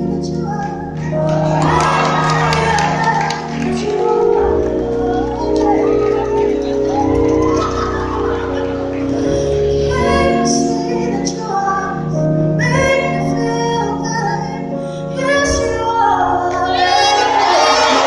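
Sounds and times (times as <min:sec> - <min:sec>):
high voice singing gliding notes: 0:00.0 - 0:18.0
live band music: 0:00.3 - 0:11.5.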